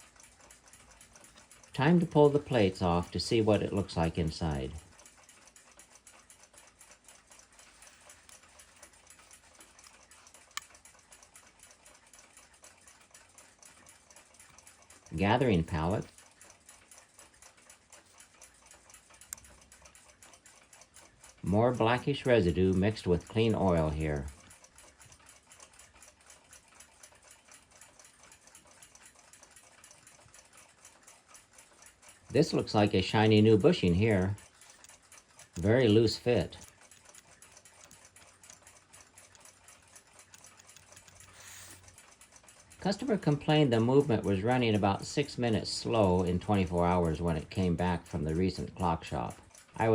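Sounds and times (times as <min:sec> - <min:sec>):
clock ticking: 0:00.0 - 0:49.9
metal click: 0:33.7 - 0:42.6.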